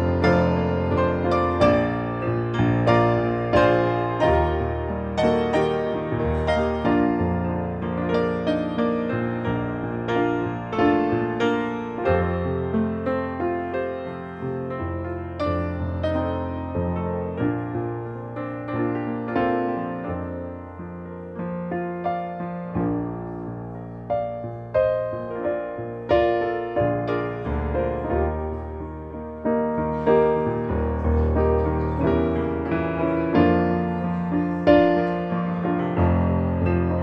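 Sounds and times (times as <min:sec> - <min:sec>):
piano playing chords: 0:00.0 - 0:37.0.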